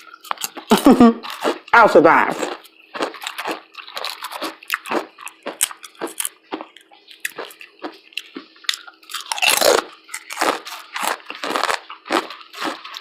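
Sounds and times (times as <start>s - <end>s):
person chewing crunchy chips: 0.0s - 13.0s.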